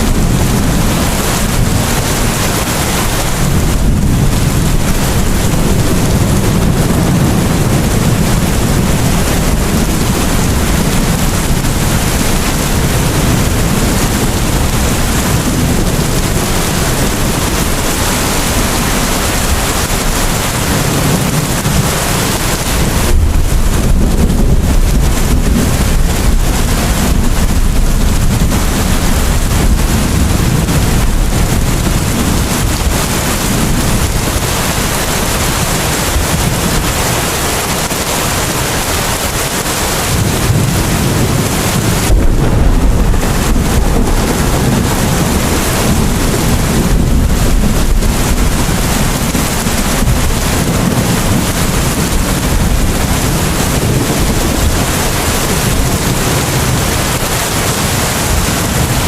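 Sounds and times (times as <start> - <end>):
low rumble: 0.0 - 37.0, 40.0 - 56.2
steady rain hissing: 0.0 - 59.0.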